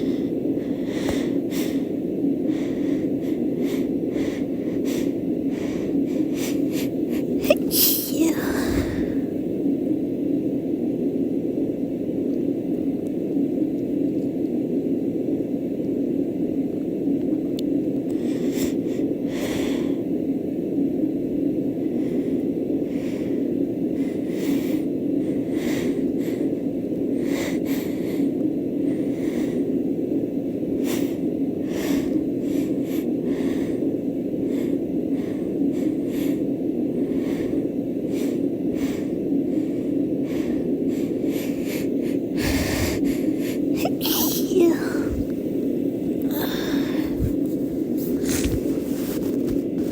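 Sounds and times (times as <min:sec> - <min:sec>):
woman sniffing: 0:06.2 - 0:09.3, 0:41.5 - 0:45.6, 0:46.2 - 0:49.9.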